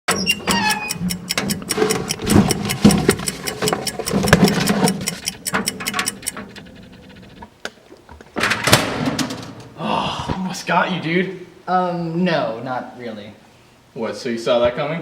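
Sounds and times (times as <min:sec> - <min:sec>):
fast mechanical clicking: 0:00.4 - 0:07.5
steady low hum: 0:01.3 - 0:07.6.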